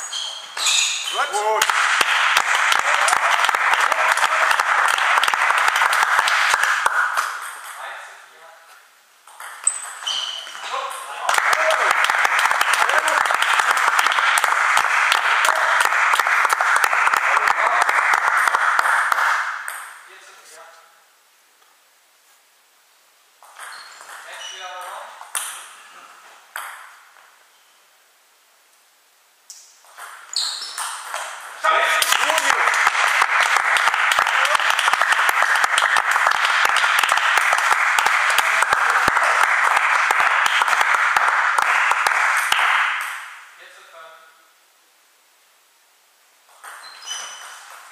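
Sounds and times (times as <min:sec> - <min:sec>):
crowd applauding: 0:01.2 - 0:07.3, 0:11.2 - 0:19.5, 0:31.6 - 0:43.1.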